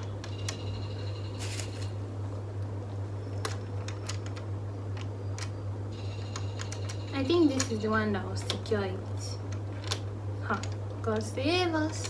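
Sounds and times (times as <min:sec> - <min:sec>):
steady low hum: 0:00.0 - 0:12.0
plastic parts clicking and rattling: 0:03.3 - 0:05.6, 0:09.5 - 0:12.0.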